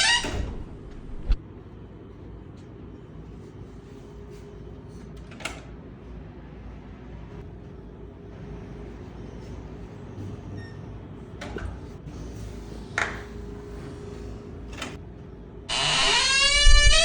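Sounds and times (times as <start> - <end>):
door creaking: 0.0 - 1.4, 15.7 - 17.0.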